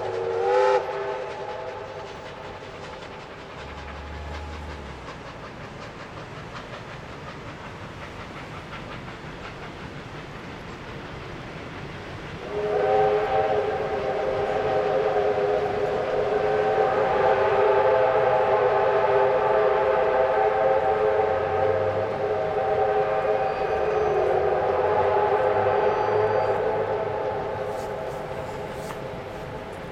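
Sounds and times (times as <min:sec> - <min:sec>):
steam whistle blast: 0:00.0 - 0:01.9, 0:12.4 - 0:29.0
steam locomotive running: 0:00.0 - 0:29.9.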